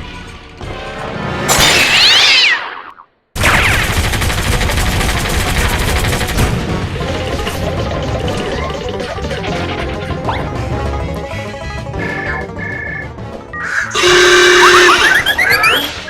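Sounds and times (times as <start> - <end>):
rapid machine-gun fire: 3.4 - 6.9
cartoon music: 11.9 - 16.0.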